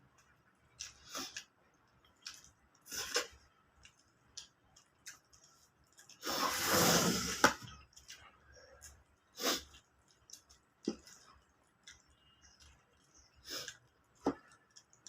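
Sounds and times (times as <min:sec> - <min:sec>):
wet chewing and smacking: 0:00.0 - 0:06.2, 0:07.8 - 0:15.0.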